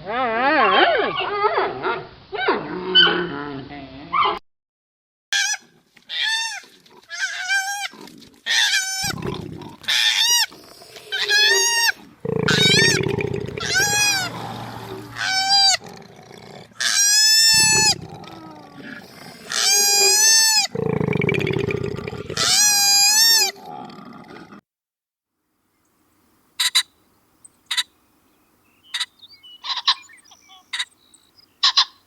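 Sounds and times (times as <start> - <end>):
animal squealing calls: 5.4 - 16.0, 16.8 - 20.8, 22.3 - 23.6, 28.9 - 30.9
low rough grunting: 12.0 - 16.8, 17.6 - 19.6.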